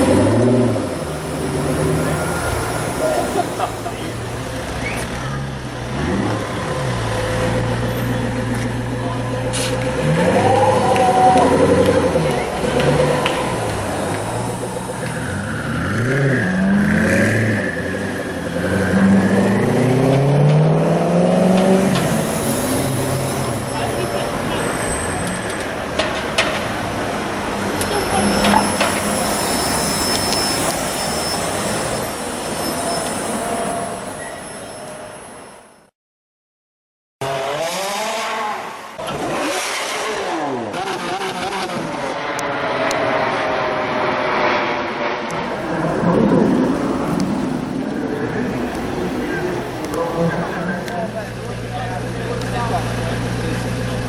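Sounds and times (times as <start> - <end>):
car engine revving: 0.0 - 32.8, 37.2 - 54.0
sports car engine revving: 37.2 - 54.0.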